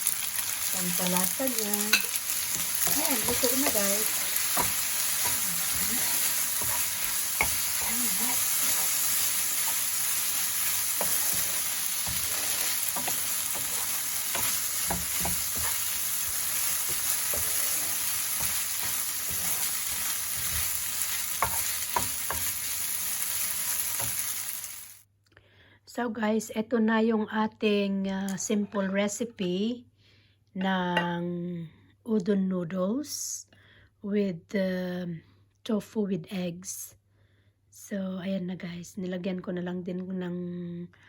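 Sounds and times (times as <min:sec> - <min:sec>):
noodles sizzling in a frying pan: 0:00.0 - 0:25.1.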